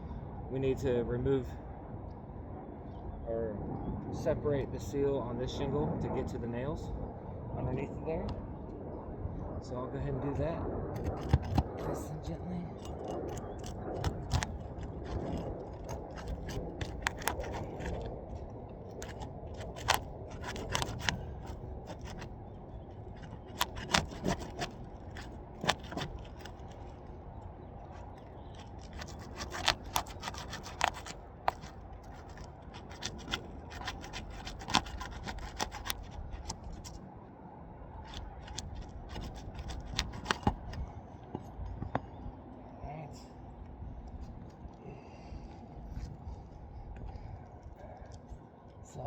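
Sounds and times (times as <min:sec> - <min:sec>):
shingle scraping and rubbing: 0:10.9 - 0:12.1, 0:12.7 - 0:37.0, 0:38.0 - 0:40.9
adhesive crackling and clicking: 0:11.0 - 0:12.0, 0:12.8 - 0:37.0, 0:38.0 - 0:40.8.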